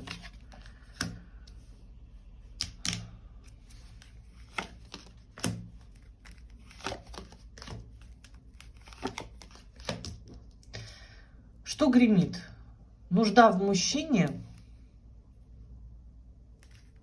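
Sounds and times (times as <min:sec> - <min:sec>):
cards being shuffled: 0:00.0 - 0:01.6, 0:02.6 - 0:10.4, 0:16.6 - 0:17.0.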